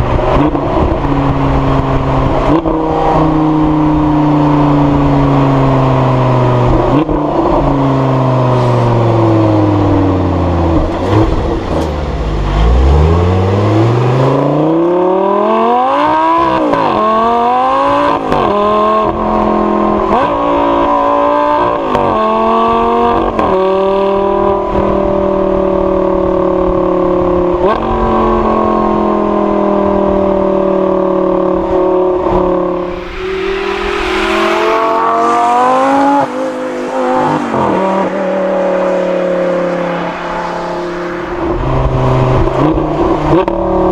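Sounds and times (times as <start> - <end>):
sports car engine revving: 32.5 - 43.9
engine droning: 32.6 - 43.4.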